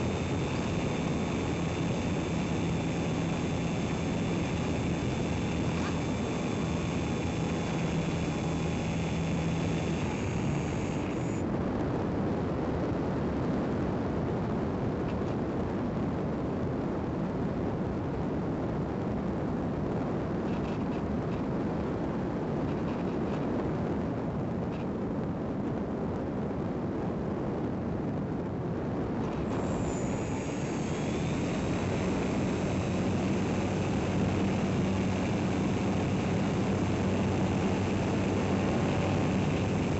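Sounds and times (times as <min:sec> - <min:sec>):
electric motor whine: 0:00.0 - 0:11.6, 0:29.2 - 0:39.9.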